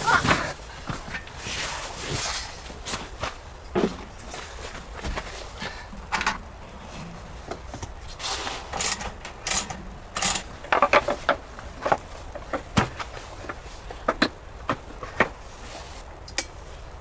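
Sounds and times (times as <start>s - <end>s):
rustling: 0.0s - 17.0s
light knocks and clatter: 8.7s - 15.4s.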